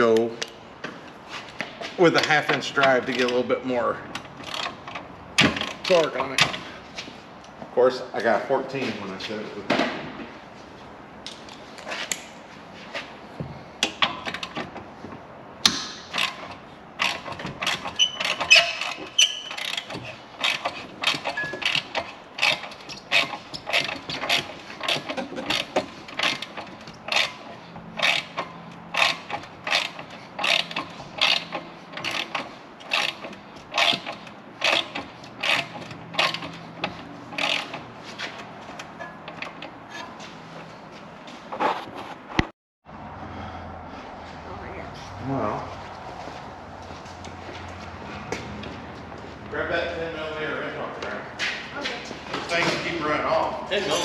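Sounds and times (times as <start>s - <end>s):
ratchet wrench clicking: 4.2s - 5.0s, 15.6s - 37.8s.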